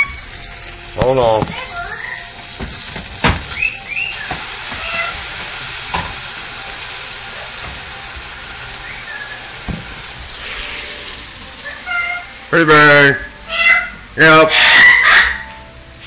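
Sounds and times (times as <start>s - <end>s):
food sizzling in a pan: 0.0s - 16.0s
parrot chirps: 1.7s - 2.3s, 3.5s - 5.4s, 8.8s - 9.6s, 11.6s - 12.4s, 13.2s - 15.7s
spatula knocking against pan: 4.2s - 6.3s.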